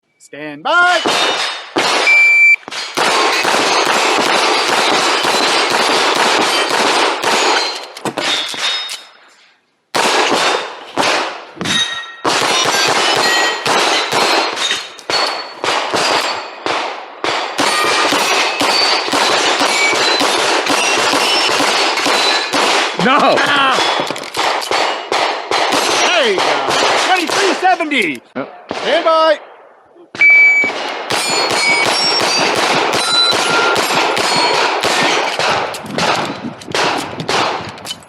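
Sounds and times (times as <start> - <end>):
rapid pistol shots: 1.0 - 8.8, 9.9 - 11.6, 12.2 - 28.1, 28.7 - 29.1, 30.6 - 37.8
steel plates ringing: 11.7 - 16.6, 17.6 - 22.8, 31.1 - 35.4.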